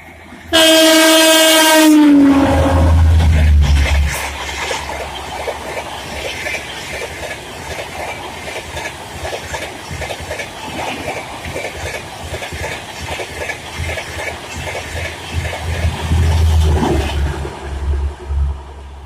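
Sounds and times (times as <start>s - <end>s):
train wheels clattering on rails: 3.0s - 18.1s.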